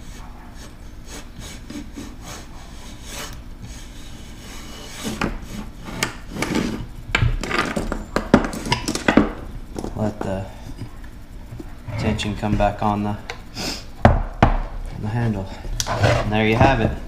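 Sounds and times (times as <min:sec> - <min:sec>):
pull rope rasping rub: 0:15.3 - 0:17.0.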